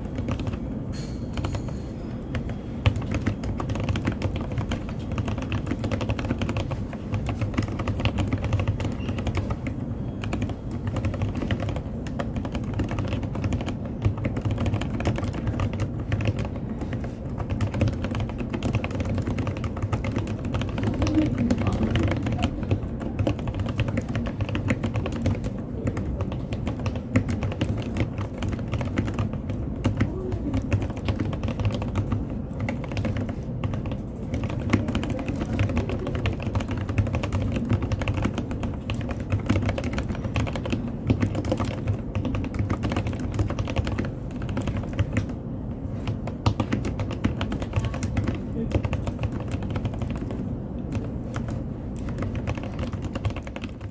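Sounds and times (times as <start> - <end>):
mechanical keyboard typing: 0.0 - 53.9.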